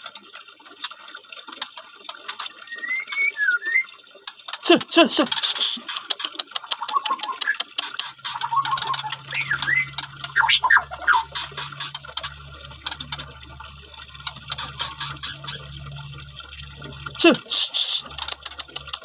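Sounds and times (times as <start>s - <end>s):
bird whistling and chattering: 2.6s - 3.9s, 6.7s - 11.8s
steady low hum: 8.0s - 19.0s.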